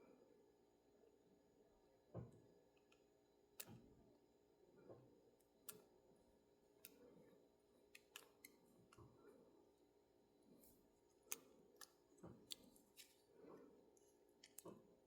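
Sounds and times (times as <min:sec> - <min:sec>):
low room hum: 0:00.0 - 0:15.0
small clicks and taps of model parts: 0:02.2 - 0:03.9, 0:07.9 - 0:09.2, 0:11.1 - 0:13.2, 0:14.0 - 0:15.0.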